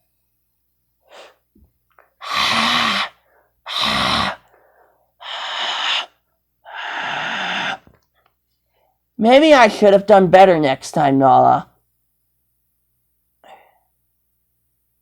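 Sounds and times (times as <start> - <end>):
person's breathy hissing exhalations: 1.0 - 1.4, 2.2 - 7.9.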